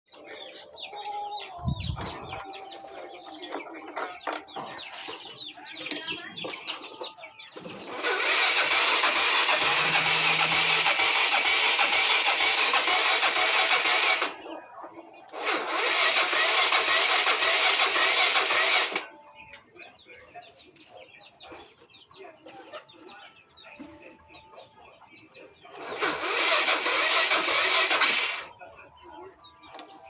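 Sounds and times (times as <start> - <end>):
chickens clucking: 0.1 - 30.0
scooter starter cranking: 7.8 - 14.4, 15.3 - 19.1, 25.8 - 28.6.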